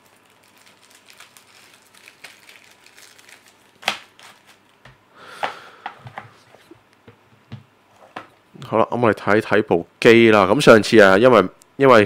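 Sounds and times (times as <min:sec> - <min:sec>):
packaging rustling: 0:00.0 - 0:04.8.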